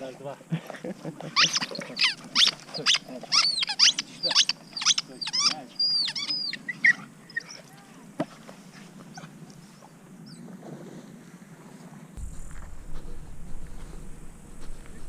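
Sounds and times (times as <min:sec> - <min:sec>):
high squeaky animal calls: 0:01.4 - 0:07.6.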